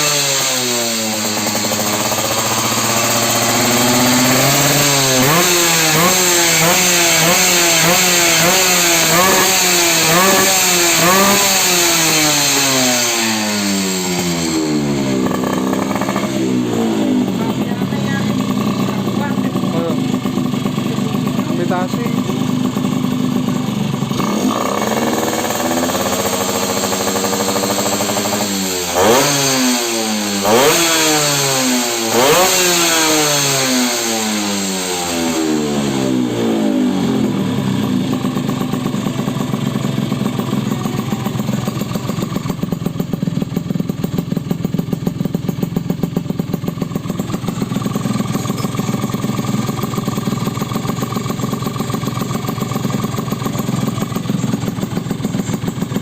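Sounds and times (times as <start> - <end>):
two-stroke engine idling and revving: 0.0 - 56.0.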